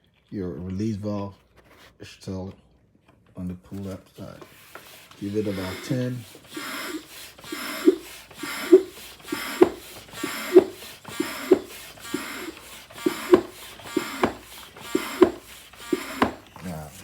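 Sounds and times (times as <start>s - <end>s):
hand pump strokes with knocks: 3.8s - 17.0s.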